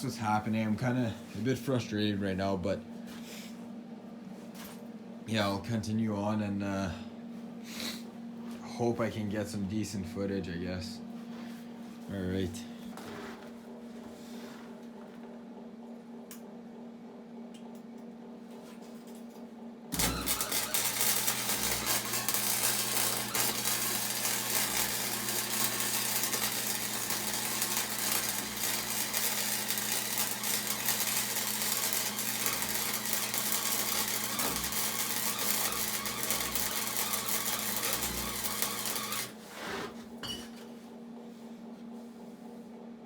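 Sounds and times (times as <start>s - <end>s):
low mains buzz: 0.0s - 43.0s
arc welder crackling: 19.9s - 39.4s.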